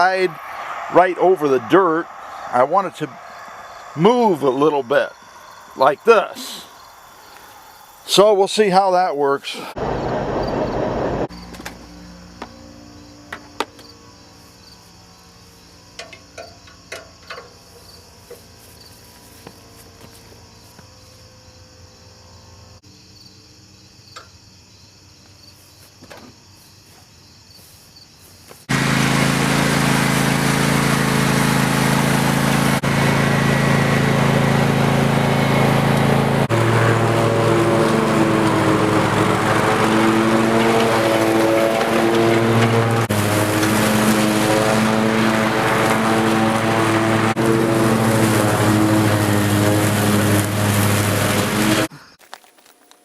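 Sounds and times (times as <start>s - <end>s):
lawn tractor engine running: 28.7s - 53.0s.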